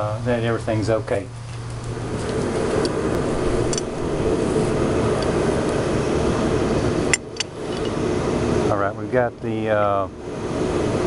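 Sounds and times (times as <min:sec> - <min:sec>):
rushing shop equipment noise: 0:01.1 - 0:09.3.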